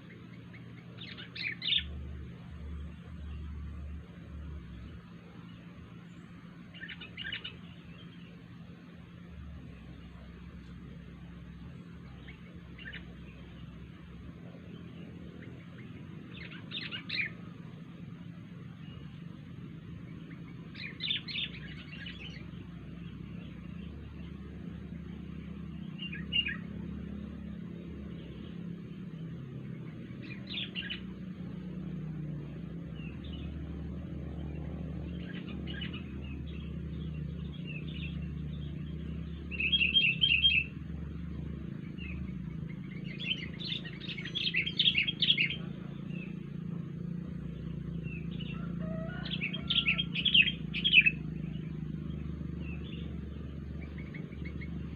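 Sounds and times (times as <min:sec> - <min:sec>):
steady low hum: 0:00.0 - 0:54.9
bird chirping in quick bursts: 0:37.1 - 0:40.8.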